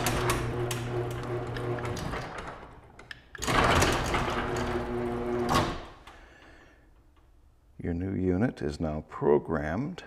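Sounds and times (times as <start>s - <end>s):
garage door opener motor humming: 0.0s - 6.2s.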